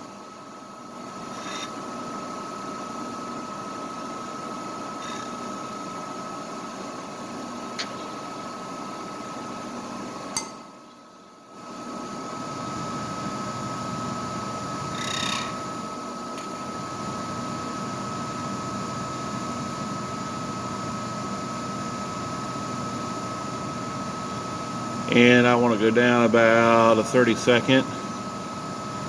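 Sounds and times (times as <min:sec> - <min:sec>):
milling machine whirring: 0:21.5 - 0:29.0.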